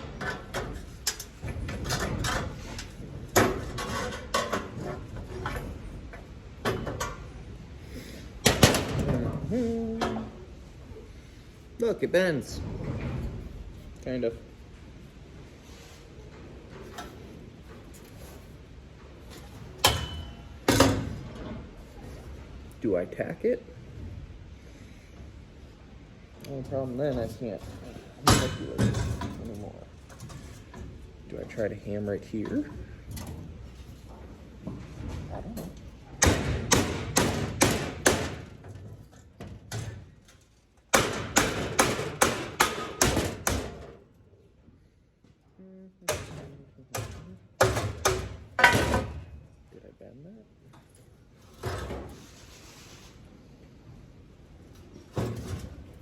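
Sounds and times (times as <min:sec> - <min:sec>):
sheet metal clanging: 0:19.4 - 0:21.6, 0:27.1 - 0:31.0
hammer striking steel: 0:36.2 - 0:38.4.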